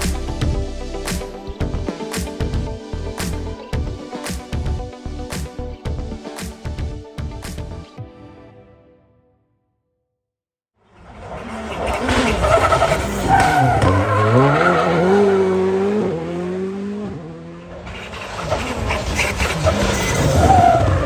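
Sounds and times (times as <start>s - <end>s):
rally car engine revving: 11.0s - 21.0s.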